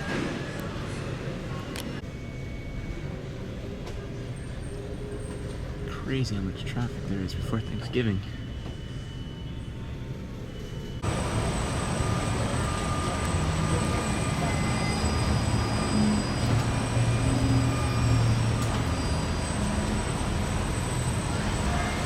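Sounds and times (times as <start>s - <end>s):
road traffic rumble: 9.7s - 22.0s.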